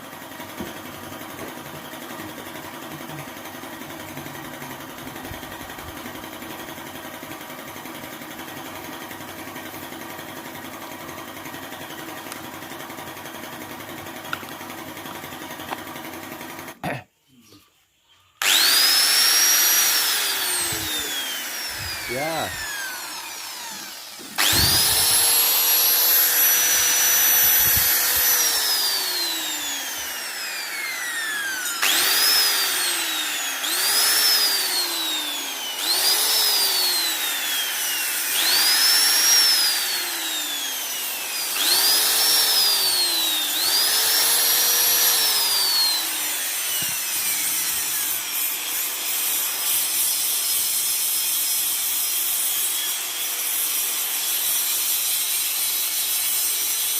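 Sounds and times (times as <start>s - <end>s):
electric grinder whining: 0.4s - 16.8s, 18.4s - 56.9s.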